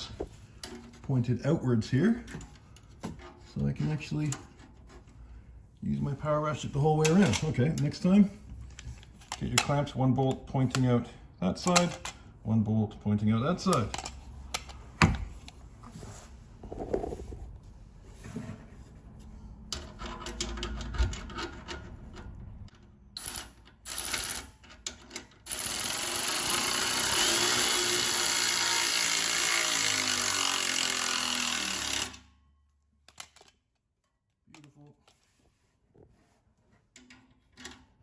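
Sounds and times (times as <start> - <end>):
electric power ratchet running: 25.5 - 32.2.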